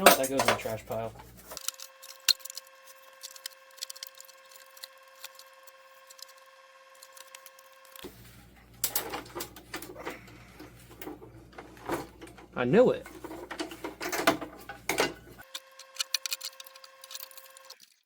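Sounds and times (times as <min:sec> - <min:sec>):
clicks and clinks of tools: 0:00.0 - 0:02.6.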